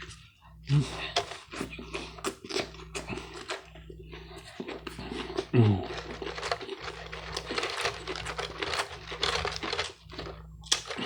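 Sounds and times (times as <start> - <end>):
food packaging crinkling: 4.6 - 11.0.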